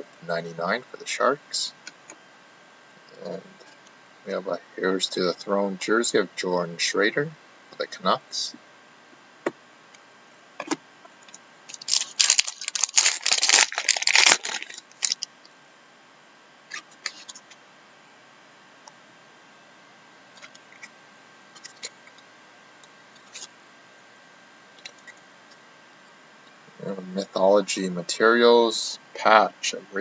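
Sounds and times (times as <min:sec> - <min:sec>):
wrapper crinkling and tearing: 0:11.7 - 0:15.3.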